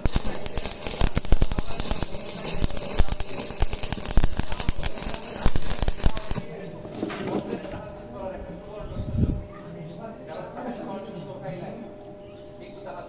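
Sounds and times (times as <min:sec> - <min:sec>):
welding arc crackling: 0:00.0 - 0:06.7.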